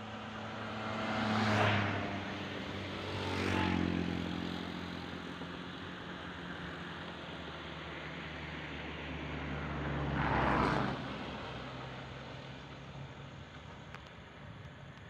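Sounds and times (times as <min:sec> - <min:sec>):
motor vehicle passing: 0:00.2 - 0:05.2.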